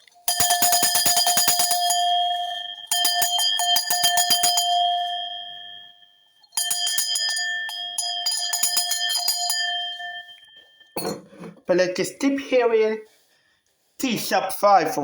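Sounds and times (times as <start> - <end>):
cowbell shaken: 0.0 - 11.2.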